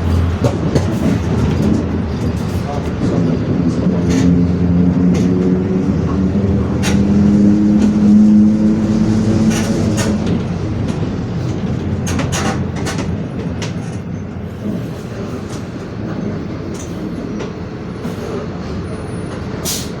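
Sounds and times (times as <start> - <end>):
bus road rumble: 0.0 - 20.0
rattles and knocks: 0.2 - 3.3, 9.0 - 14.1.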